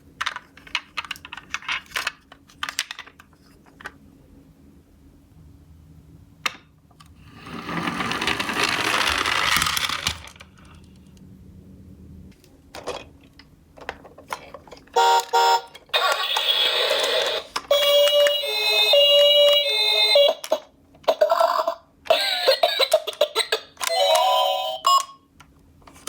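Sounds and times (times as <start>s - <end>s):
toy car rolling clatter: 7.2s - 10.8s, 16.0s - 25.0s
toy car handling clicks: 7.7s - 11.0s, 22.7s - 25.2s
toy siren tone: 15.0s - 25.2s.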